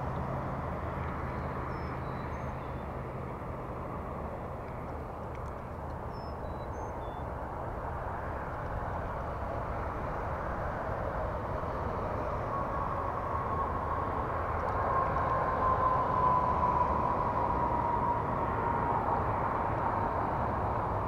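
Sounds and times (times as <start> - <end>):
low engine-like rumble: 0.0 - 21.0.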